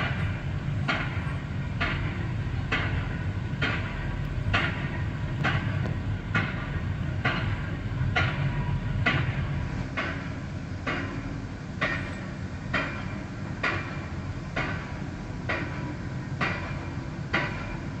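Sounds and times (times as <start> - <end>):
low mechanical rumble: 0.0 - 9.8.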